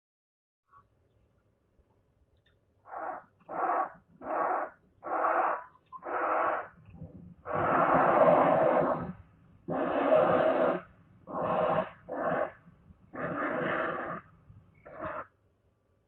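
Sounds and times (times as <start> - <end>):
breathy creature calls: 2.9 - 6.8, 7.5 - 12.6, 13.2 - 14.3.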